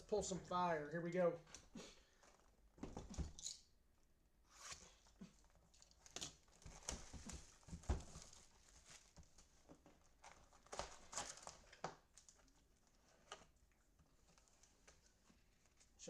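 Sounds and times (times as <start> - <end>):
plastic wrap crinkling and tearing: 5.0 - 13.5
cardboard rustling: 5.3 - 16.0.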